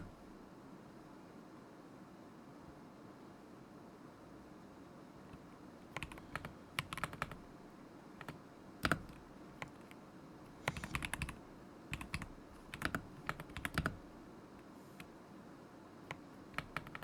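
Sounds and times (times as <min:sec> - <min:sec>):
mechanical keyboard typing: 0:05.3 - 0:07.4, 0:08.2 - 0:09.9, 0:10.6 - 0:14.1, 0:16.1 - 0:17.0.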